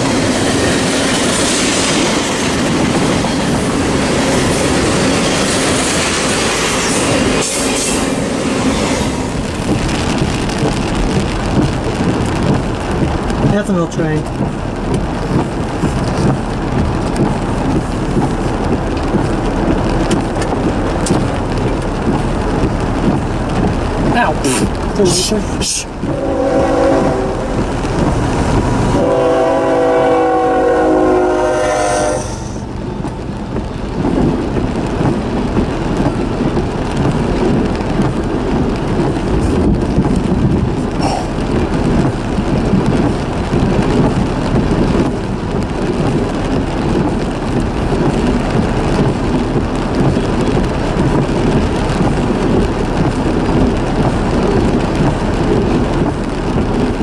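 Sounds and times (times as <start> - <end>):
train rumbling and rattling past: 0.0 - 57.0
train air horn: 26.1 - 27.6, 29.0 - 32.6.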